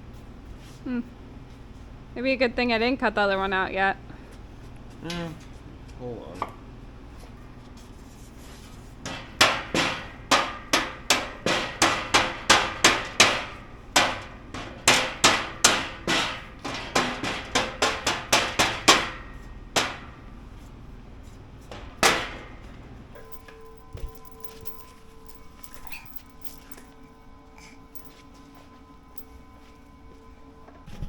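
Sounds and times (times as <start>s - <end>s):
hammer striking metal plate: 9.1s - 20.3s, 21.7s - 24.9s.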